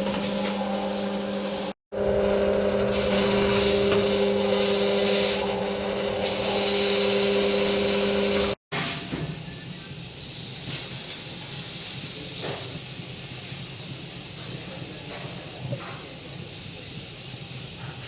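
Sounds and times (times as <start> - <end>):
machine humming: 0.0 - 8.6
hissing noise: 0.6 - 8.6.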